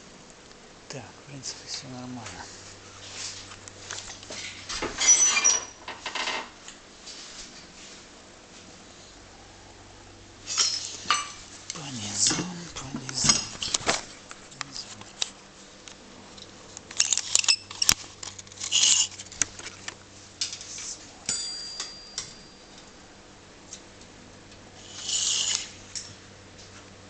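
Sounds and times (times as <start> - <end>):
metal tools clicking and clinking: 5.0 - 6.4, 10.5 - 11.4, 16.8 - 19.4.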